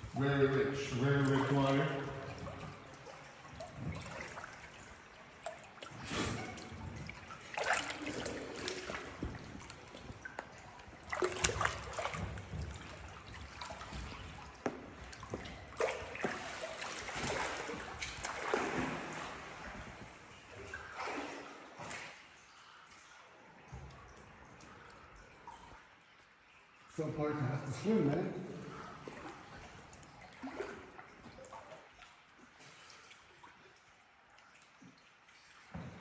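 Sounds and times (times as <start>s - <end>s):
water splashing and sloshing: 0.0s - 36.0s
water trickling: 0.0s - 36.0s.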